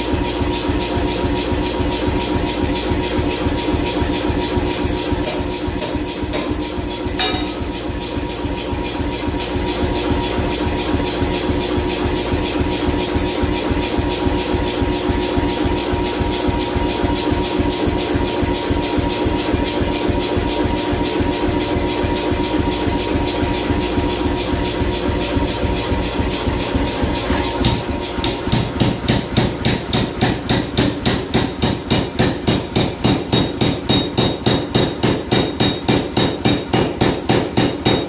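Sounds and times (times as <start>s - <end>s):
power hammer mechanical pulsing: 27.2s - 38.0s.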